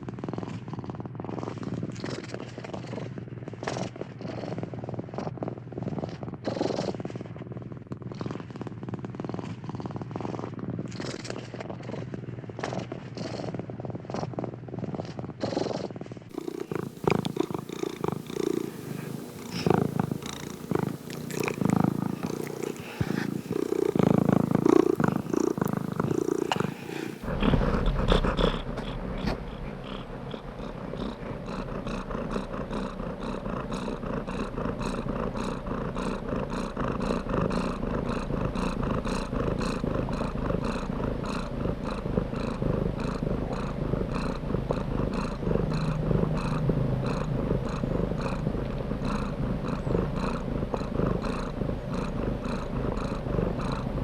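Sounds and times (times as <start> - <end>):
cat purring: 0.0 - 54.0.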